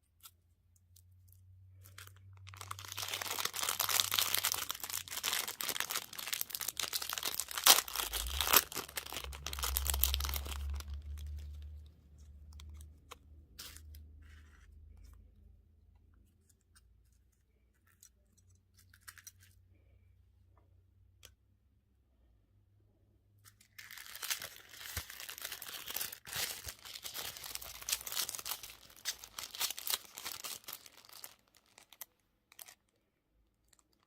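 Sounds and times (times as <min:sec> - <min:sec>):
candy wrapper crinkling: 0:00.1 - 0:15.2, 0:23.5 - 0:34.0.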